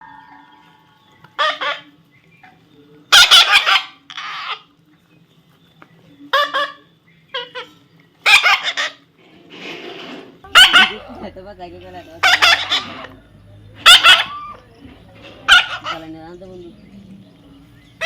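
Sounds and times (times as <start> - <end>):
parrot squawking: 1.4 - 1.9, 3.1 - 4.7, 6.3 - 9.1, 10.4 - 16.2.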